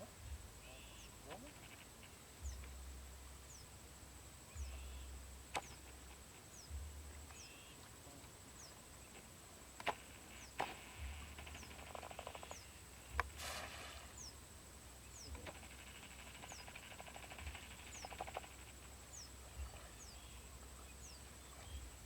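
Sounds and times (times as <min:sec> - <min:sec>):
low rumbles: 0:00.0 - 0:01.6, 0:02.3 - 0:22.0
quick run of ticks: 0:15.3 - 0:18.8.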